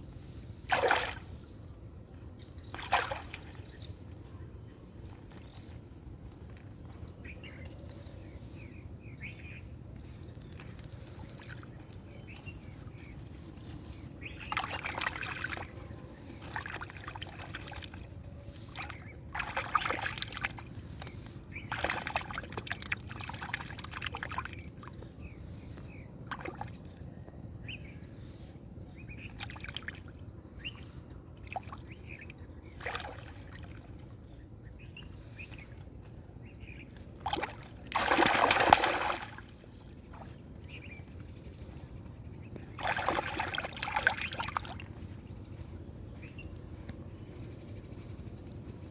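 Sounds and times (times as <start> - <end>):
water sloshing and splashing: 0.6 - 1.5, 2.7 - 3.8, 10.5 - 25.6, 26.2 - 27.1, 29.2 - 30.3, 31.0 - 34.4, 35.0 - 41.2, 42.6 - 45.2.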